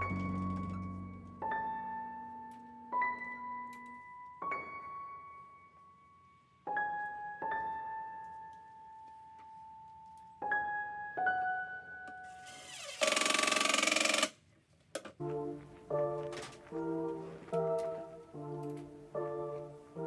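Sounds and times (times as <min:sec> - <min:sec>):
slow sparse piano notes: 0:00.0 - 0:05.8.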